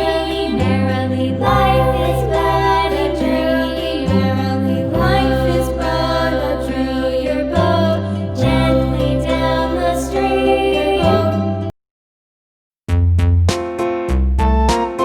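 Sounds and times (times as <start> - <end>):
song with sung melody: 0.0 - 11.7
sustained bass notes: 0.0 - 11.7, 12.9 - 15.0.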